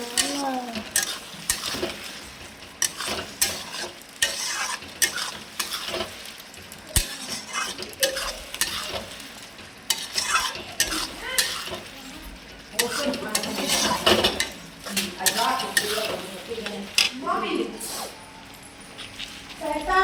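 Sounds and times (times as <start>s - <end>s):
vegetables sizzling in a pan: 0.0s - 18.2s
spoon scraping and clinking: 0.2s - 2.1s, 2.8s - 6.1s, 7.0s - 9.2s, 9.9s - 11.8s, 12.8s - 16.3s.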